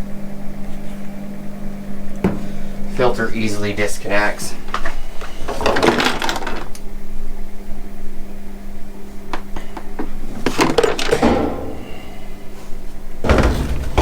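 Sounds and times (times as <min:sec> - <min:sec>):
hard plastic scraping: 0:10.4 - 0:14.0.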